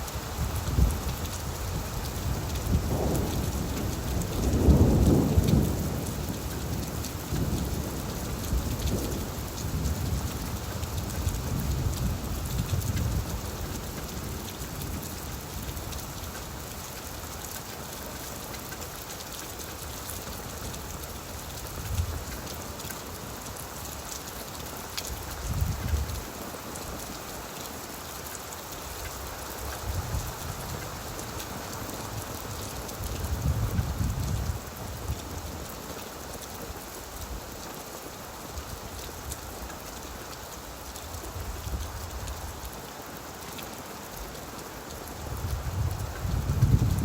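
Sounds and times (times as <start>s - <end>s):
rain falling on leaves: 0.0s - 47.0s
thunder rumbling: 2.3s - 10.3s, 45.4s - 47.0s.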